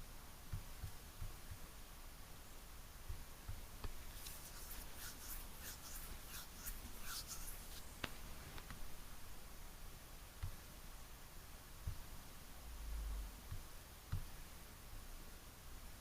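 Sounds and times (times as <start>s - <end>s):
faint scratchy rustling: 3.8s - 9.3s.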